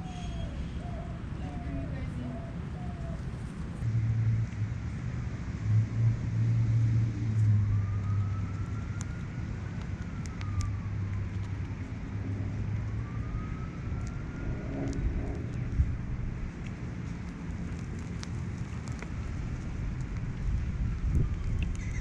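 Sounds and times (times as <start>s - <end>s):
road traffic rumble: 0.0s - 22.0s
emergency vehicle siren wailing: 5.7s - 22.0s.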